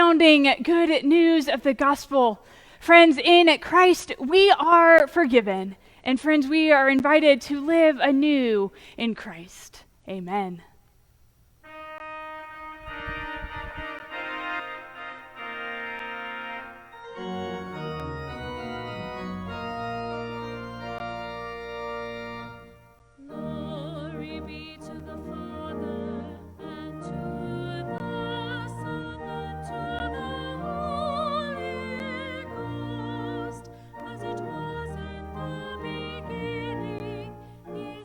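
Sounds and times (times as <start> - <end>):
church organ chords: 11.6 - 38.0
solo singer with vibrato: 23.2 - 38.0.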